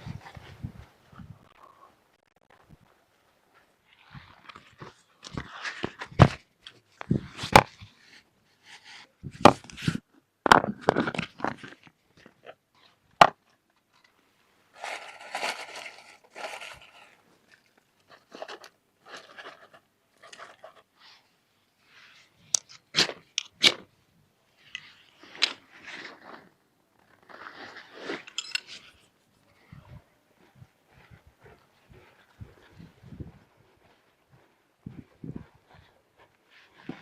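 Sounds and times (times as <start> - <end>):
crunching and rustling handling: 14.7 - 20.9.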